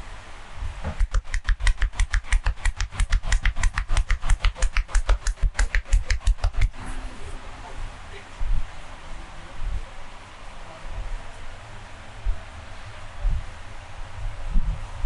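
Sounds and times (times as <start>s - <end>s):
hands slapping on body: 0.9s - 6.8s.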